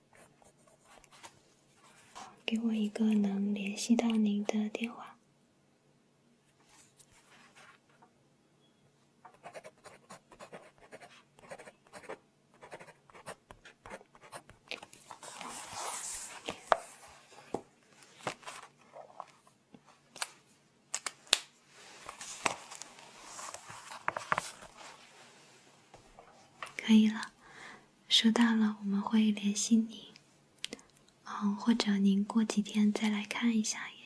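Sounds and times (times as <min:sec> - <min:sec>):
pen scratching on paper: 0:09.4 - 0:14.6.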